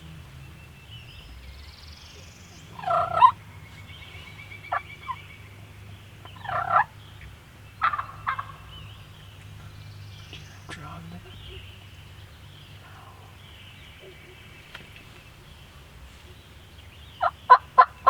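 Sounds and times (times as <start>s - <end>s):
faint high bird chirps: 0.1s - 18.0s
turkey gobbling: 2.6s - 9.8s, 17.2s - 18.0s.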